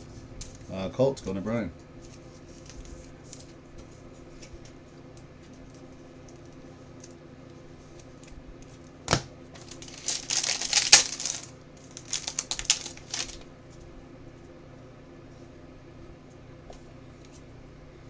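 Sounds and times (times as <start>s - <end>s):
packaging crinkling: 9.5s - 13.5s.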